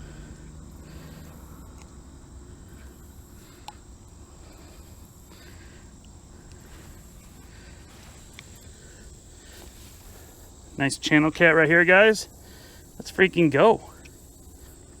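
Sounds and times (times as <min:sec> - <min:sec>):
insects singing: 0:00.0 - 0:15.0
low outdoor rumble: 0:00.0 - 0:15.0
faint clicks: 0:03.6 - 0:03.8.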